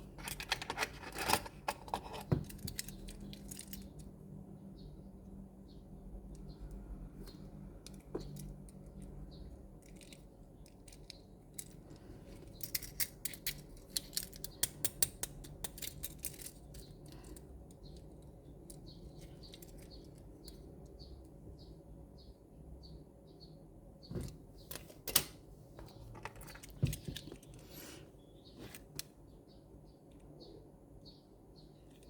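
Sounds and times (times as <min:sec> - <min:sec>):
toy parts clicking and tapping: 0:00.2 - 0:04.2, 0:07.8 - 0:21.4.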